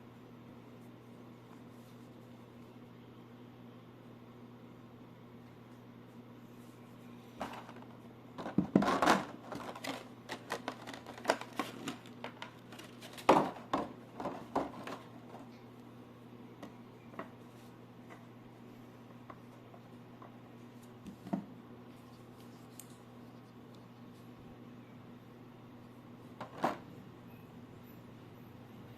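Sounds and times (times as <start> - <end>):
low electrical hum: 0.0 - 28.9
plastic and cardboard packaging rustling: 7.4 - 15.6.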